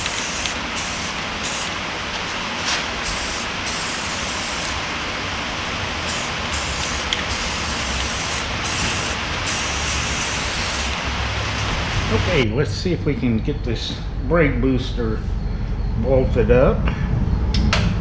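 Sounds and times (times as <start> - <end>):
aerosol can spraying hiss: 0.0 - 1.7, 3.0 - 4.8, 6.1 - 11.0.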